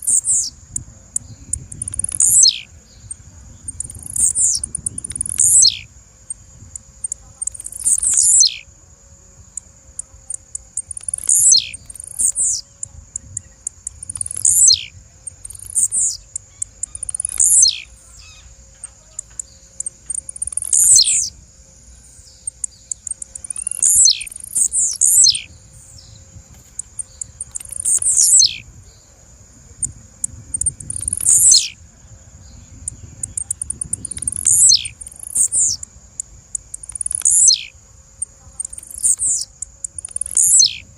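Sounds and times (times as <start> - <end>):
bird high chips: 1.5 - 2.7, 3.8 - 5.9, 6.8 - 8.7, 10.0 - 21.4, 22.2 - 28.6, 30.6 - 31.8, 33.0 - 37.8, 38.6 - 40.9.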